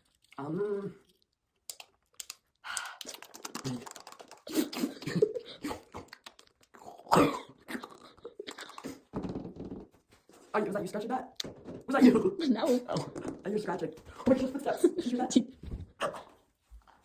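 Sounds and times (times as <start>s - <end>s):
tapping clicking and scratching: 3.0s - 5.0s.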